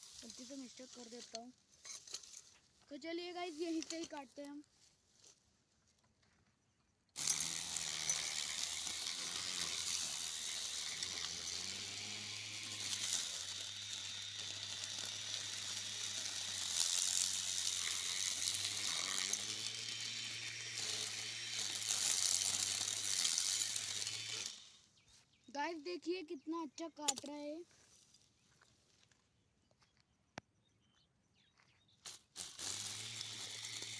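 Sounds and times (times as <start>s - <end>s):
lawn mower motor hum: 7.2s - 24.8s, 32.1s - 33.9s.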